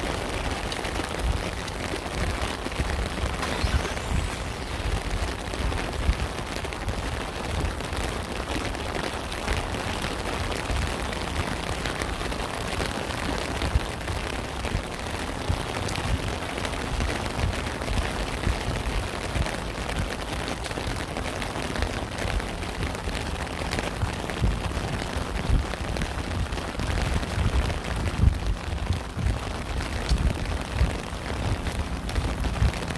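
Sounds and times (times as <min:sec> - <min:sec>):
low rumble: 0:00.0 - 0:08.4
heavy rain pattering: 0:00.0 - 0:32.9.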